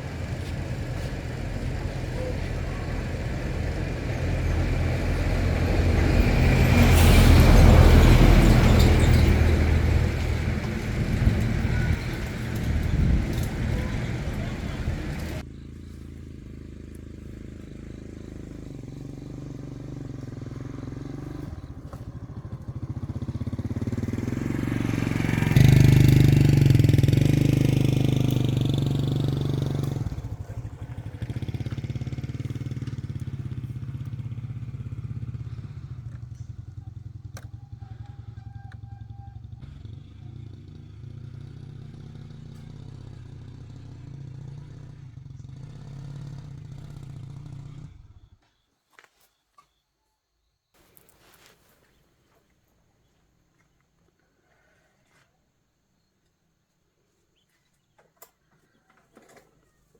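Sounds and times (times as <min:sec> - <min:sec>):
motorbike engine running: 0:00.0 - 0:48.3.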